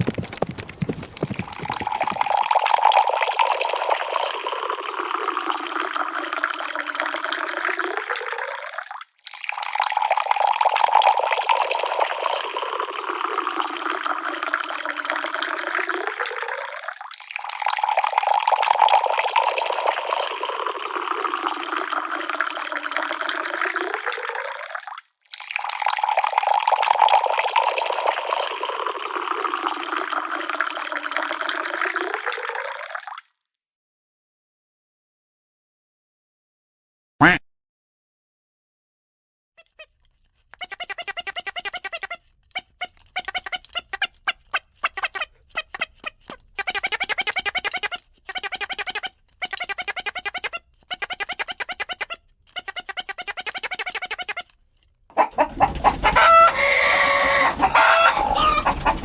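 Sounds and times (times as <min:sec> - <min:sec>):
rushing water: 0:01.2 - 0:32.2, 0:55.2 - 0:59.0.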